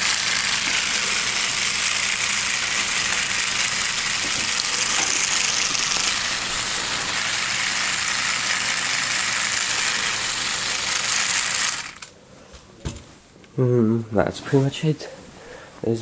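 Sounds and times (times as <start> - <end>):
small electric motor whirring: 0.0 - 12.1.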